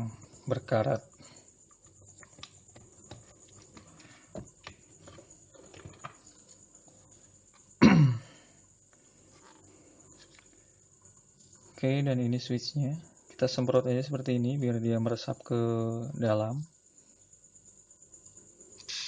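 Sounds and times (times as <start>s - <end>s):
person coughing or grunting: 7.8s - 8.4s.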